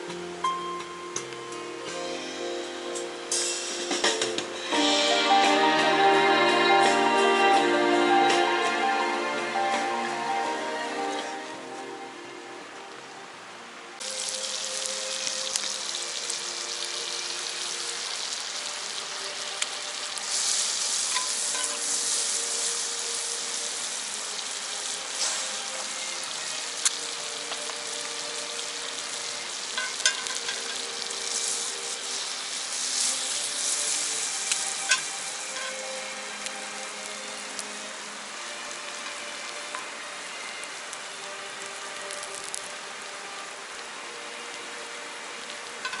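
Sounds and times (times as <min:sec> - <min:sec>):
food sizzling in a pan: 0:00.0 - 0:13.2, 0:14.0 - 0:46.0
quiet background music: 0:00.0 - 0:46.0
utensils clicking against pan: 0:20.3 - 0:22.2, 0:29.7 - 0:37.7.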